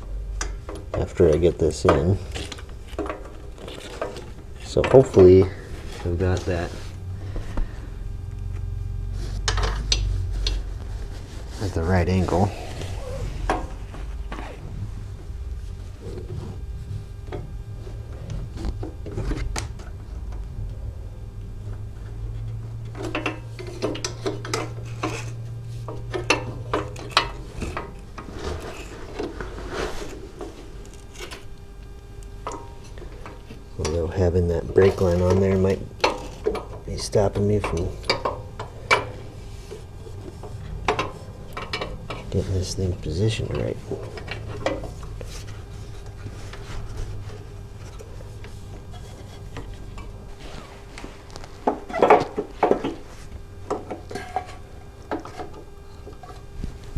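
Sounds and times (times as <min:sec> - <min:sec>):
steady low hum: 0:00.0 - 0:56.9
metal parts clicking and scraping: 0:36.0 - 0:46.8.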